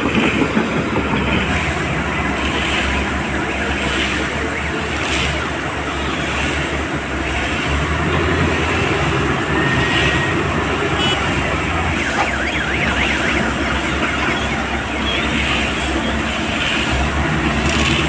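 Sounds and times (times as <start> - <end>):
heavy diesel engines running: 0.0 - 18.0
warbling alarm tone: 8.7 - 16.5.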